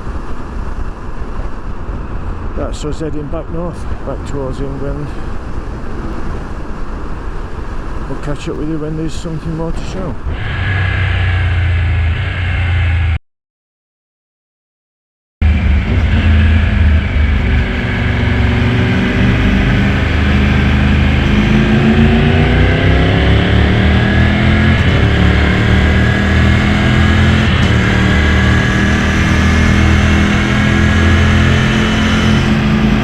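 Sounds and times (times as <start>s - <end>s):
road and wind noise: 0.0s - 13.2s, 15.4s - 33.0s
motorcycle engine revving: 10.3s - 13.2s, 15.4s - 33.0s.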